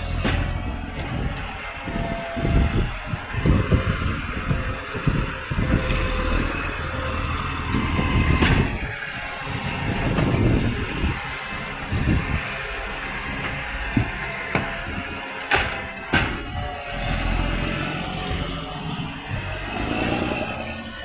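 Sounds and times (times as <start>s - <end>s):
truck engine running unevenly: 0.0s - 21.0s.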